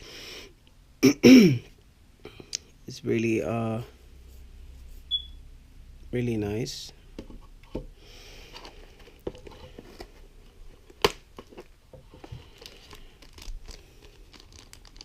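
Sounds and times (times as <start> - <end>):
plastic packaging crinkling: 8.6 - 15.0.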